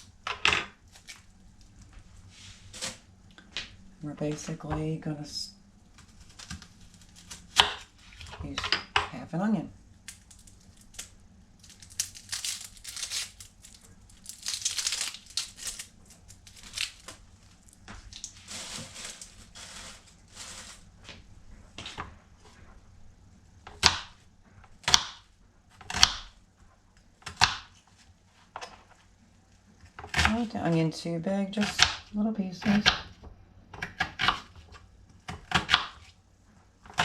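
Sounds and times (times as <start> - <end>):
onion skin rustling and tearing: 0.8 - 3.1, 5.9 - 8.6, 10.0 - 21.2.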